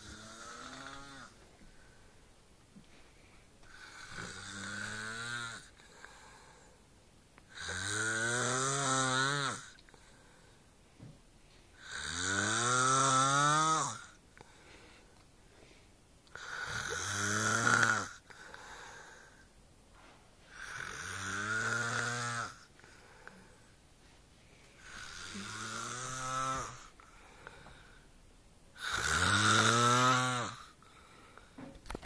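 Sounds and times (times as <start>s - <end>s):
man snoring: 0.0s - 1.4s, 3.6s - 6.7s, 7.5s - 9.8s, 11.8s - 14.2s, 16.3s - 19.4s, 20.5s - 23.5s, 24.8s - 27.6s, 28.8s - 30.9s.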